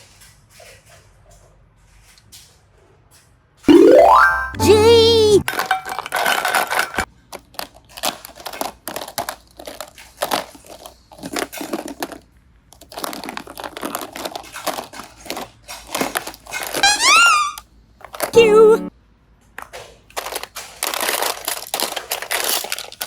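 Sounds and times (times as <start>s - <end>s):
rising whistle sound effect: 16.8s - 17.6s.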